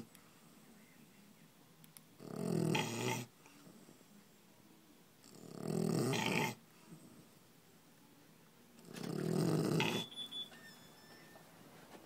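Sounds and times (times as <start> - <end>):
pet snoring: 2.2 - 3.3, 5.2 - 7.2, 8.8 - 10.1.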